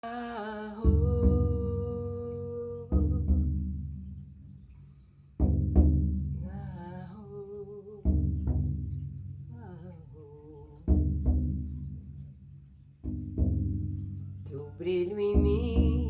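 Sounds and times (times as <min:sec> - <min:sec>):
person humming: 0:00.0 - 0:03.6, 0:14.5 - 0:16.0
frame drum beats: 0:00.8 - 0:04.6, 0:05.4 - 0:06.9, 0:08.0 - 0:09.6, 0:10.8 - 0:16.0.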